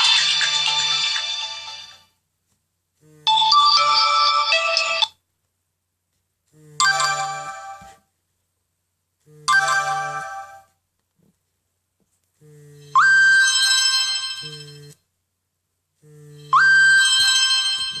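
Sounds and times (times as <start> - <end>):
phone ringtone melody: 0.0 - 2.1, 3.3 - 5.1, 6.8 - 7.9, 9.5 - 10.7, 12.8 - 15.0, 16.3 - 18.0
phone vibration buzz: 6.6 - 7.9, 9.3 - 10.7, 12.4 - 15.0, 16.0 - 17.1.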